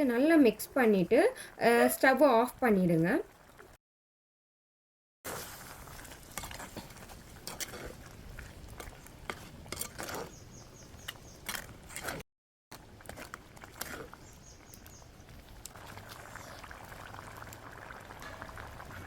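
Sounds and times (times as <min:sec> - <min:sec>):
spoon scraping a cooking pot: 0:06.4 - 0:12.2, 0:13.1 - 0:14.8.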